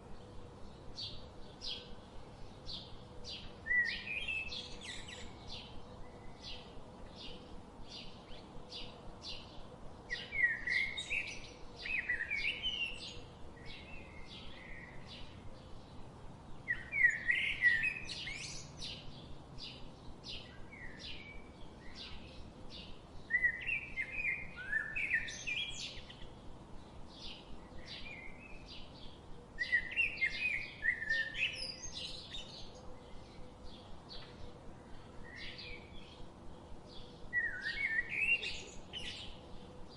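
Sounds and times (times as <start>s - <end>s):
songbird warbled song: 0.0s - 39.9s.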